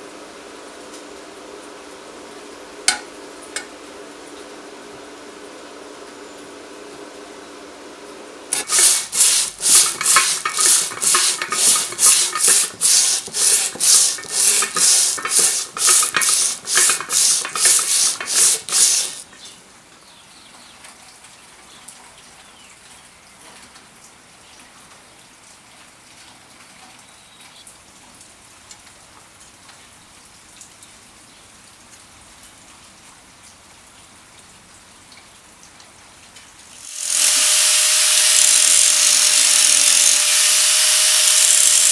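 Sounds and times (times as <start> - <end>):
hand tool scraping: 8.5 - 19.5, 36.8 - 41.9.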